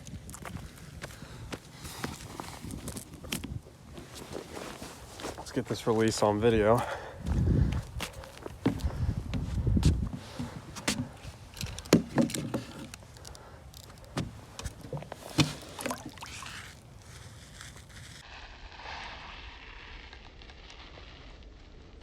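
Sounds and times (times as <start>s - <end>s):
water splashing and sloshing: 14.1s - 16.8s.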